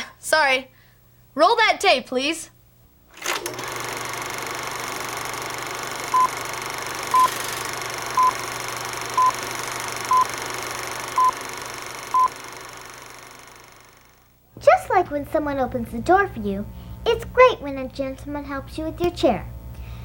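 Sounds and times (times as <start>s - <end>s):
tape hiss and hum: 5.0s - 20.0s
short beeps: 9.2s - 9.4s.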